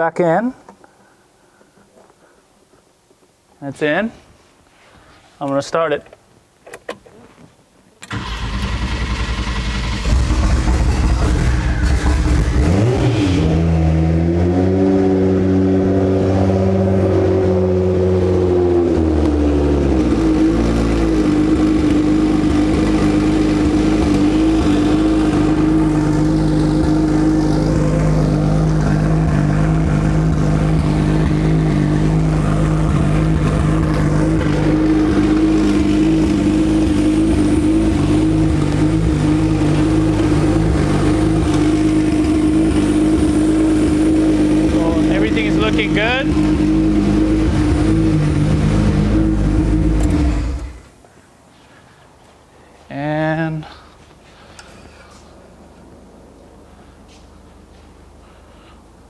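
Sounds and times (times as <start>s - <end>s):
car engine starting and idling: 8.0s - 51.0s.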